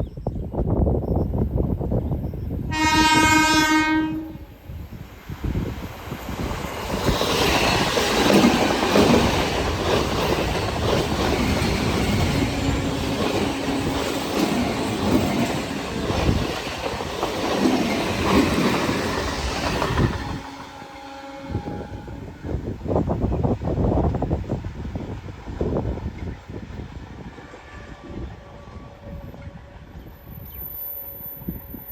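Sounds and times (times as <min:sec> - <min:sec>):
train wheels squealing: 0:27.5 - 0:31.9.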